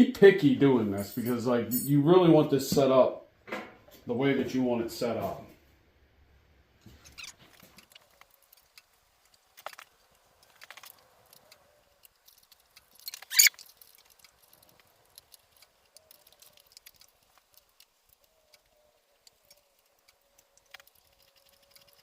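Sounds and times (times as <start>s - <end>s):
tools clicking and rattling: 7.0s - 18.7s.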